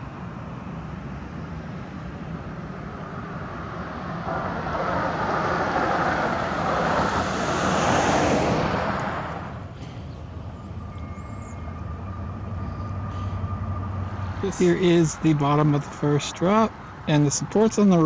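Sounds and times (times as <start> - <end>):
motor vehicle passing: 1.9 - 10.4.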